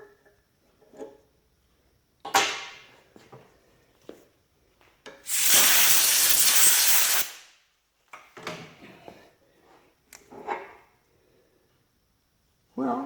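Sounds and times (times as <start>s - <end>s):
compressed air blow gun hiss: 5.3s - 7.5s.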